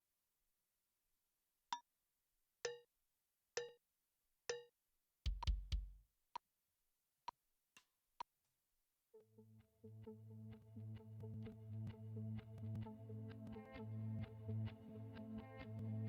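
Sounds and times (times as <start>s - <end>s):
drum hits with deep thud: 5.3s - 6.0s
sharp count-in clicks: 5.3s - 6.0s.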